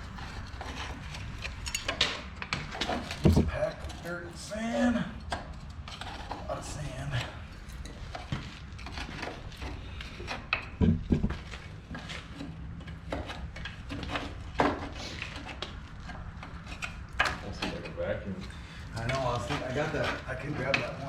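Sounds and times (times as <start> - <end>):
heavy metal knocks: 3.2 - 3.6, 10.8 - 11.4.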